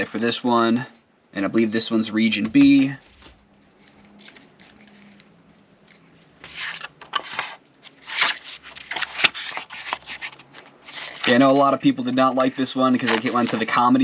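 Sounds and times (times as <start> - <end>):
packaging scrapes and rustles: 6.4 - 11.6, 12.9 - 13.8.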